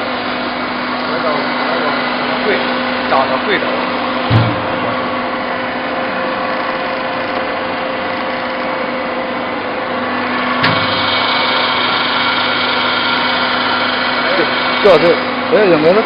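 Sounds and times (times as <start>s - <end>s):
machine mechanical hum: 0.0s - 16.0s.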